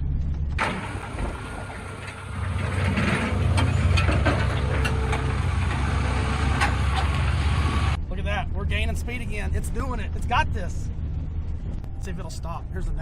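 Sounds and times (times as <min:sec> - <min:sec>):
knocks and rattles: 0:00.3 - 0:08.0
truck engine labouring: 0:00.5 - 0:08.0.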